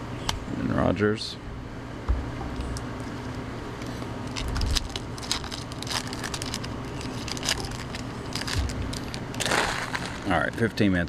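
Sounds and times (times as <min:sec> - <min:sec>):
cards being flipped through: 0:03.8 - 0:10.7.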